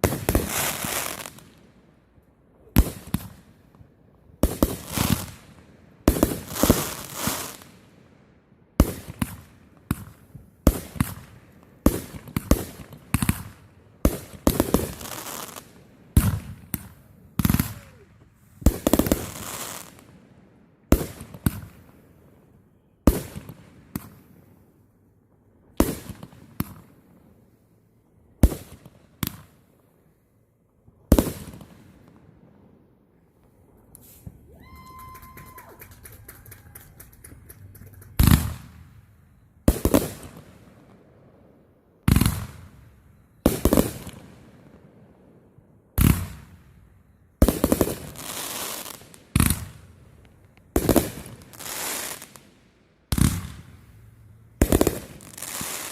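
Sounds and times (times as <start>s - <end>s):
fireworks bangs: 33.4s - 41.0s.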